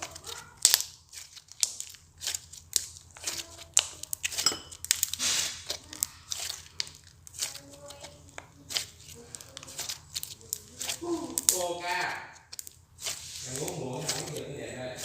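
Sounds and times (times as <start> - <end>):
slime squelching hiss: 5.0 - 12.3, 13.0 - 15.0
slime crackling pops: 9.5 - 12.7.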